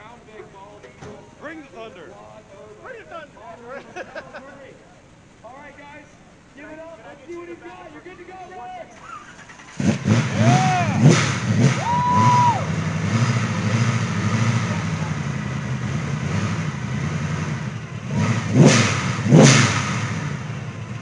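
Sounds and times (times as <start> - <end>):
car engine revving: 9.2 - 21.0.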